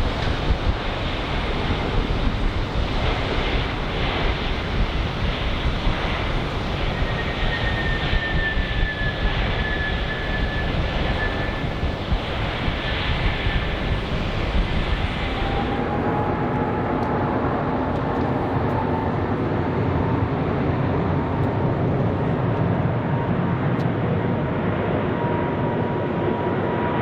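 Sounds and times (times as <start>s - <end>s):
jet engines roaring: 0.0s - 27.0s
faint high whine: 6.0s - 20.8s.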